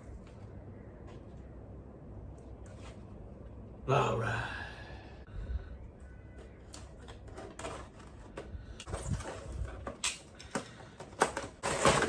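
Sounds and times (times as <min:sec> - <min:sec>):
toy and packaging handled: 0:06.4 - 0:12.0.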